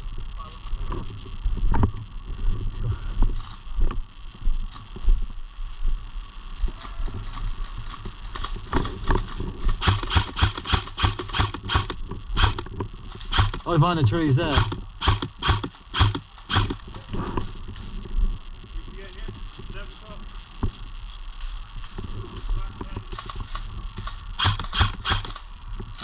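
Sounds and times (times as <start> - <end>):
camera handling and clothing noise: 6.7 - 9.8, 21.4 - 26.0.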